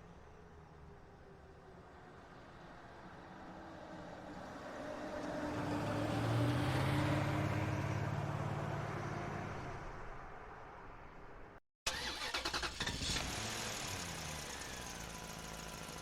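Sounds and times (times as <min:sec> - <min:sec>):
motor vehicle passing by: 0:03.5 - 0:10.6.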